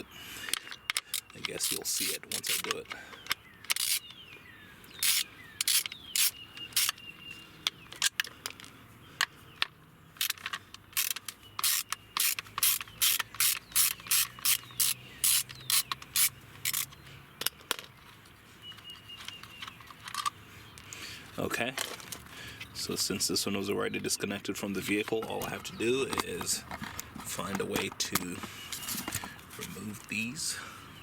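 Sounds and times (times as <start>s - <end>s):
ratchet tool clicking: 3.7s - 4.2s, 5.0s - 7.0s, 10.2s - 17.0s.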